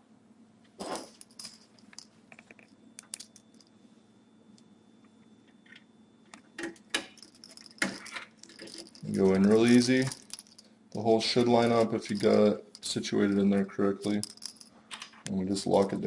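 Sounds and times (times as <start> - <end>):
small metal screws clinking: 1.0 - 3.7, 7.1 - 14.7.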